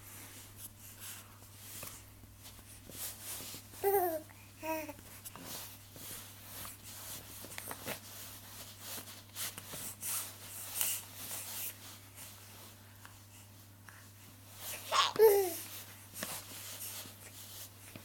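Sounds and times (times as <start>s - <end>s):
baby cooing: 14.9s - 15.6s.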